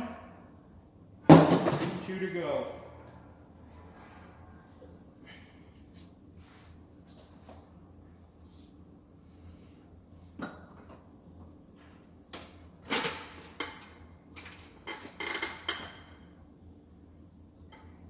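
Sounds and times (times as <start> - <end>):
low steady hum: 0.0 - 18.0
objects knocking and clattering: 1.3 - 2.1.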